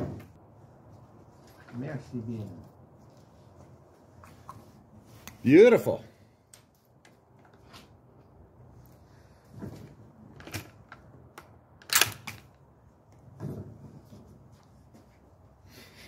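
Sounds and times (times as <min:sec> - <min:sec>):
rifle handling clicks and knocks: 0:09.6 - 0:13.6.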